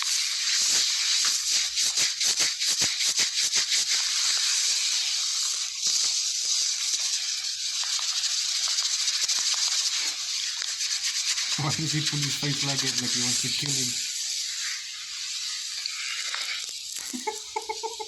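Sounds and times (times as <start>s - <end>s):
hands rubbing hair crackling: 17.0s - 18.0s.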